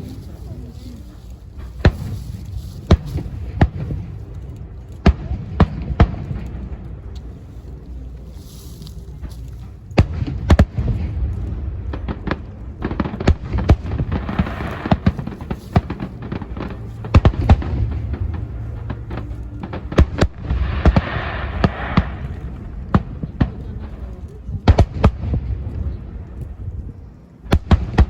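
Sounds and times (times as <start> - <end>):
fireworks crackling: 0.0 - 28.0
low rumble: 0.0 - 28.0
fireworks shells bursting: 12.1 - 23.5.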